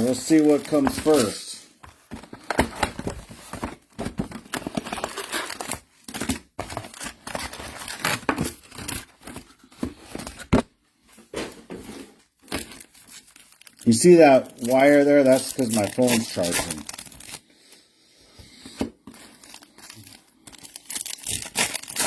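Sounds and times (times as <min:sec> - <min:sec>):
plastic wrapping crinkling and tearing: 0:00.0 - 0:09.6, 0:12.4 - 0:17.4, 0:19.1 - 0:22.0.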